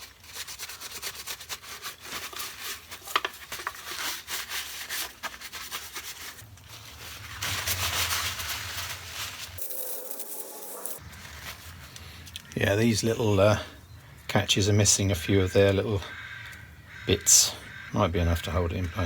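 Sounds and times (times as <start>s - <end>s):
small clicks and scrapes: 0.0s - 7.0s
hands rubbing plastic parts: 0.0s - 12.6s.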